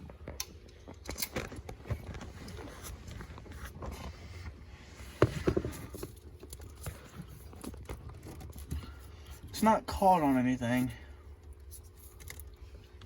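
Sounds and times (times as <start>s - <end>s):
parts clicking and rattling: 0.0s - 4.1s, 5.1s - 9.6s.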